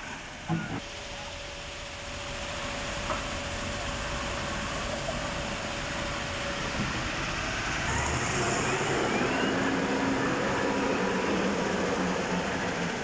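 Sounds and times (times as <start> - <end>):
diesel machinery running: 0.0 - 13.0
faint rising whines: 2.5 - 13.0.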